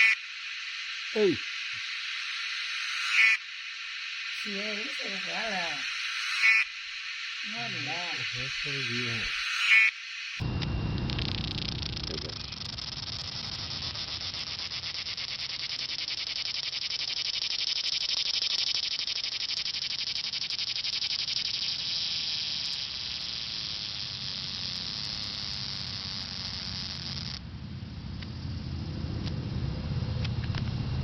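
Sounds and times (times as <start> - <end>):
cicada buzzing: 0.0 - 29.2
low rumble: 10.4 - 14.0.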